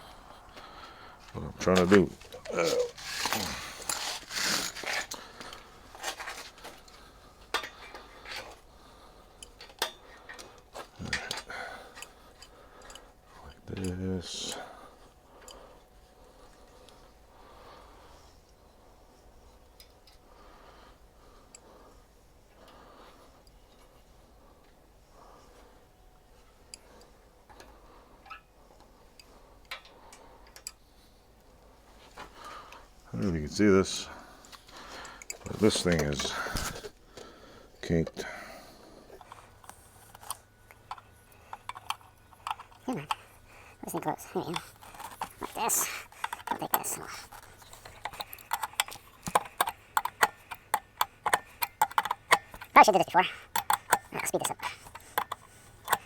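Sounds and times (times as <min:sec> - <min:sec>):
small metal parts clicking: 0:01.7 - 0:06.5, 0:39.2 - 0:56.0.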